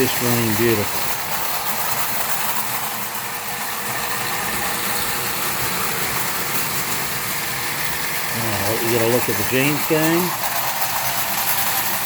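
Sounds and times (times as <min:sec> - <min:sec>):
constant hum: 0:00.0 - 0:12.0
toy trains running on track: 0:00.0 - 0:12.0.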